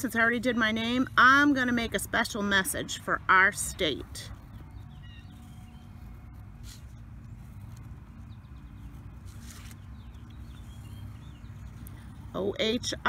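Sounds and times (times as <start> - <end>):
low outdoor rumble: 0.0 - 13.0.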